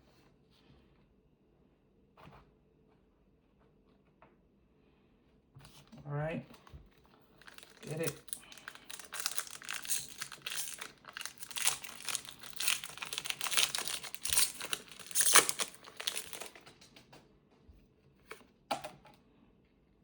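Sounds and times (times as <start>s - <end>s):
foil wrapper crinkling: 7.3s - 16.8s.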